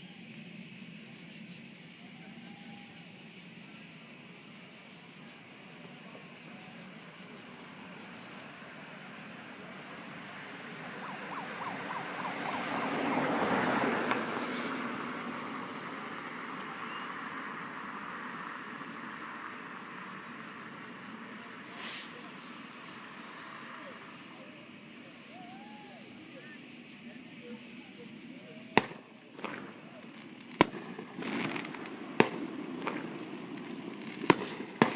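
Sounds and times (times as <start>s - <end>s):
crickets chirring: 0.0s - 34.9s
broad rushing noise: 10.6s - 16.9s, 20.9s - 24.2s.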